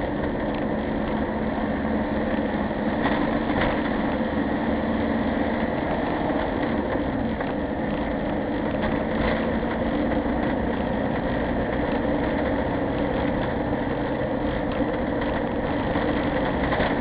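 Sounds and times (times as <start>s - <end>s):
road noise: 0.0s - 17.0s
vehicle engine from inside cab: 0.0s - 17.0s.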